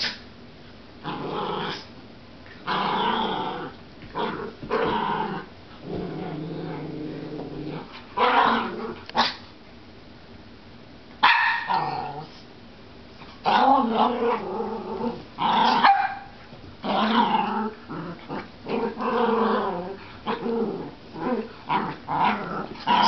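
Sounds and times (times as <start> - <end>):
dogs growling: 1.0 - 1.9, 2.6 - 9.3, 11.7 - 12.4, 13.4 - 15.9, 16.8 - 23.0.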